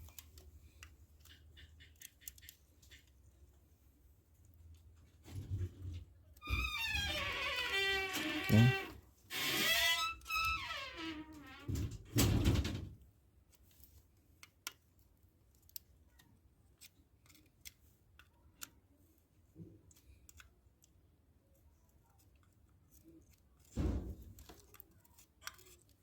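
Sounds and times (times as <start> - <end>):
hand tools clicking and snipping: 24.4 - 26.0.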